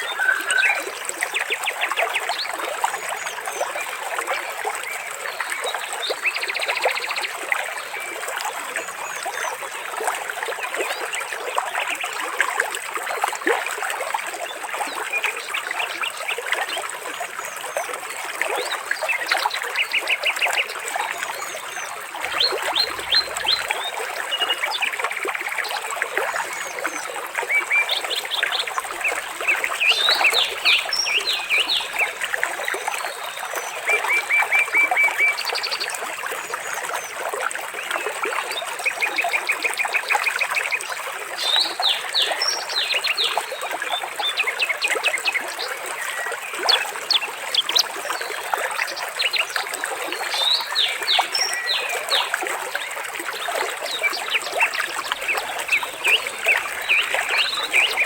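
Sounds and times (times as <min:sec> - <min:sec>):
water trickling and splashing: 0:00.0 - 0:58.0
small birds chirping: 0:21.2 - 0:24.8, 0:27.6 - 0:33.4, 0:53.4 - 0:58.0.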